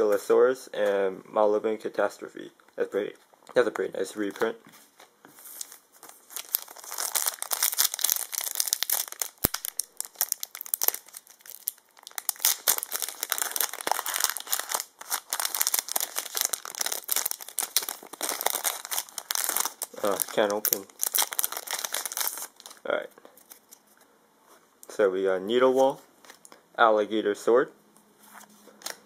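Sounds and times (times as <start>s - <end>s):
foil wrapper crinkling and tearing: 5.6s - 22.8s.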